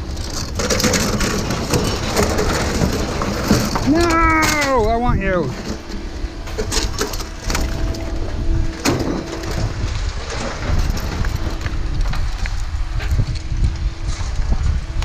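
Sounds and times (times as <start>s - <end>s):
metal clanks and knocks: 0.0s - 11.7s
engine drone: 0.0s - 15.0s.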